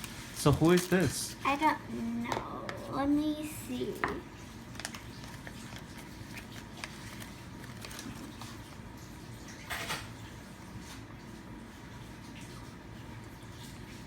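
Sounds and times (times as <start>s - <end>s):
plastic packaging rustle: 0.0s - 1.5s, 4.4s - 9.1s.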